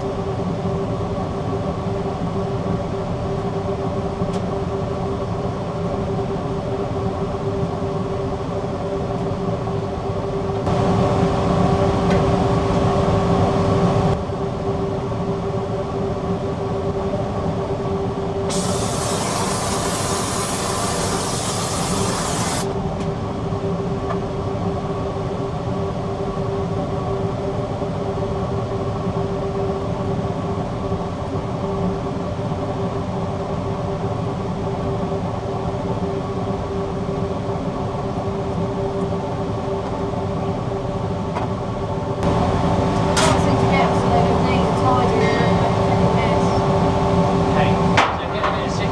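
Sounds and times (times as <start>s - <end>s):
workshop machinery running: 18.2s - 23.3s, 39.4s - 48.9s
bright hiss: 18.5s - 22.7s.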